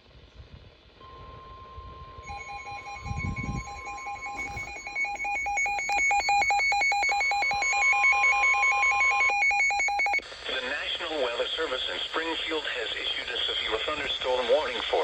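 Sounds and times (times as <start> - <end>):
steady single tone: 1.0 - 9.8
two-pitch warbling alert tone: 2.2 - 10.2.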